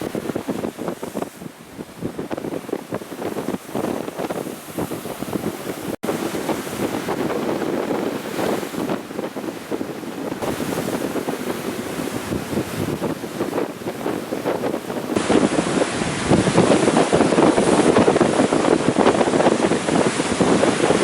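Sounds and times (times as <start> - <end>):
ocean surf breaking: 0.0 - 21.0
wind buffeting microphone: 0.0 - 21.0.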